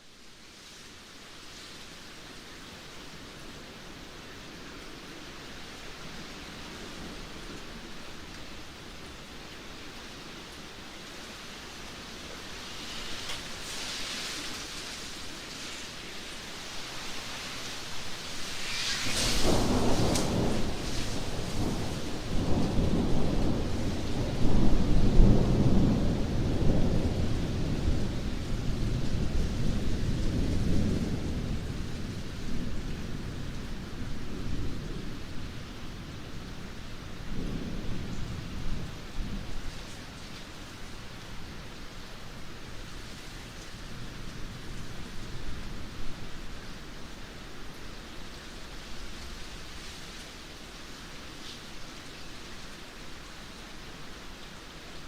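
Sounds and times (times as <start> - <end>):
steady rain: 0.0 - 55.0
thunder rumbling: 16.8 - 43.2.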